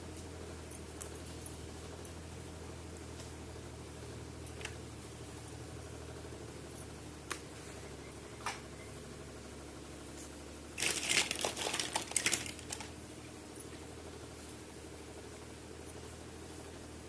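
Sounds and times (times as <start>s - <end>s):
low steady hum: 0.0s - 17.0s
plastic packaging crinkling: 10.8s - 13.0s.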